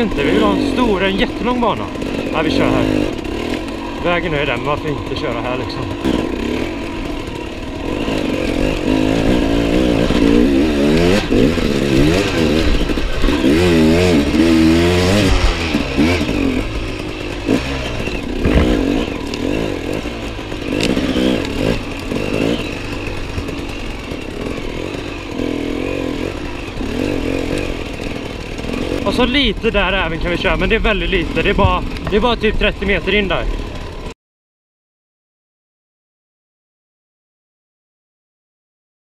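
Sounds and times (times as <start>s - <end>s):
motorcycle engine revving: 0.0s - 34.2s
sharp knocks: 18.4s - 19.1s.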